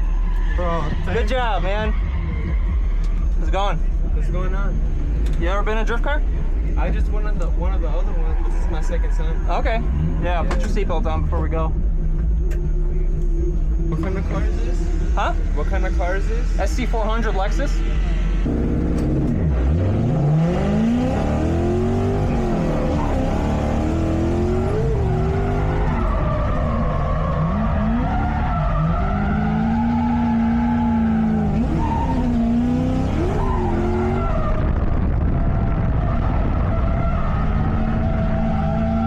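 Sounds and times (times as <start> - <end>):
car engine revving hard: 18.4 - 39.0
tires skidding on pavement: 19.4 - 39.0.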